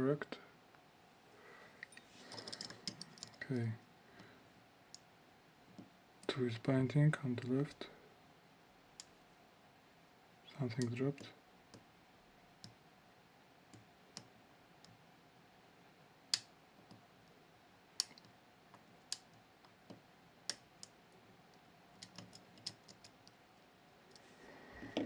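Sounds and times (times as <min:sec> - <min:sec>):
lock pick clicking on pins: 0:01.8 - 0:03.4, 0:18.0 - 0:18.3, 0:21.9 - 0:23.4.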